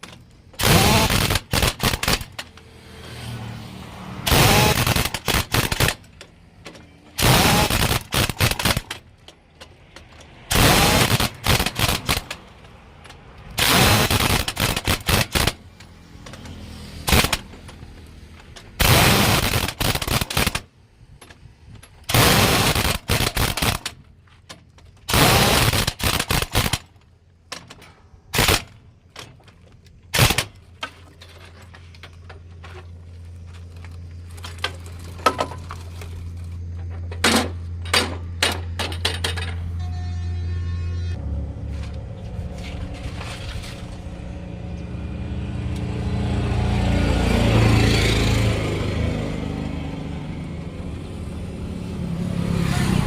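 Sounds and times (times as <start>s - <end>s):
pneumatic impact wrench hammering: 0.0s - 2.6s, 4.2s - 12.7s, 13.5s - 20.7s, 21.4s - 27.0s, 27.6s - 29.5s, 30.1s - 30.6s.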